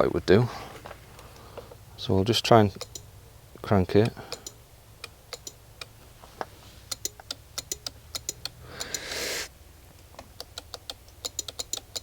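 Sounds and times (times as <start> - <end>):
short hiss: 8.9 - 9.5.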